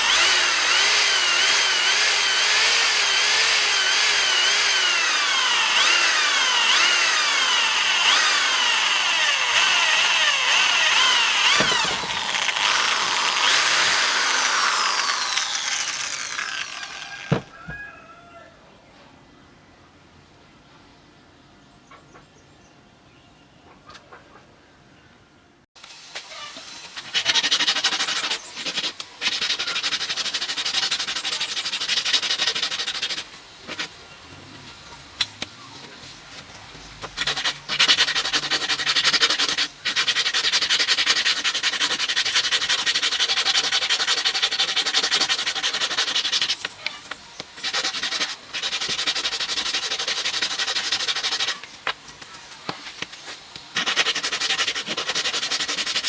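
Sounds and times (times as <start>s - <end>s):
abrasive sanding scrape: 26.6s - 34.0s, 35.8s - 56.0s.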